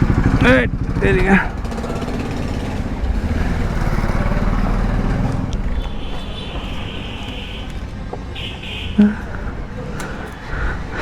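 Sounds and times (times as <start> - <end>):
motorcycle engine running: 0.0 - 8.0.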